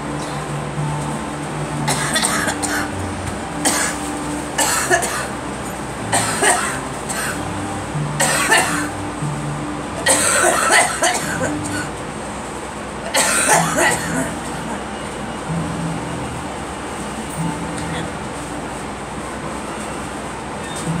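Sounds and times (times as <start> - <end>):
background music with low notes: 0.0 - 12.9, 13.5 - 19.8, 20.8 - 21.0
girl coughing: 1.9 - 2.9, 3.6 - 4.0, 4.6 - 5.3, 6.1 - 7.4, 8.2 - 8.9, 10.0 - 11.9, 13.1 - 14.3.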